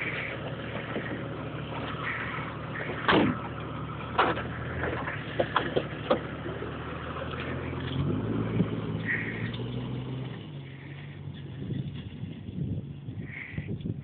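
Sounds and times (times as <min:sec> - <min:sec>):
vehicle engine running: 0:00.0 - 0:14.0
knocks and rattles: 0:02.8 - 0:08.9.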